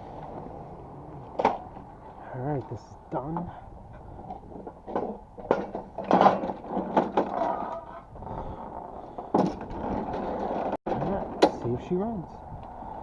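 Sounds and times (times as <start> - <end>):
tools knocking and scraping: 4.2 - 7.8.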